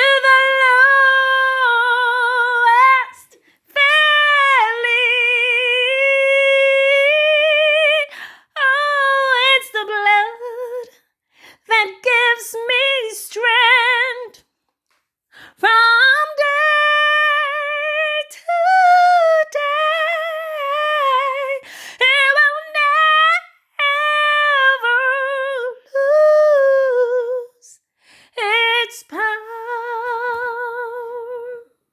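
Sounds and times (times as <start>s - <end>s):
woman singing unaccompanied: 0.0s - 11.0s, 15.5s - 27.8s, 28.4s - 31.8s.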